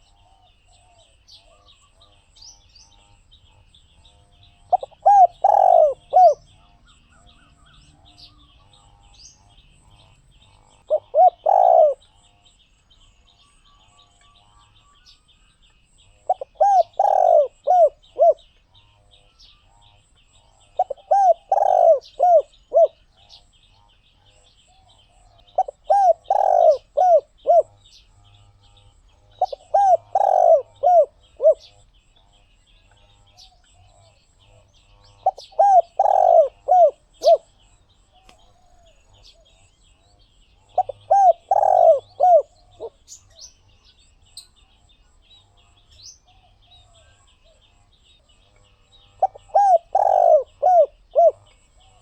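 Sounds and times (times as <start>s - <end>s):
faint high-pitched chirping: 0.0s - 52.0s
dove cooing: 4.6s - 8.8s, 10.8s - 12.2s, 16.2s - 18.5s, 20.7s - 23.1s, 25.5s - 27.8s, 29.4s - 31.8s, 35.2s - 37.5s, 40.7s - 43.1s, 49.2s - 52.0s.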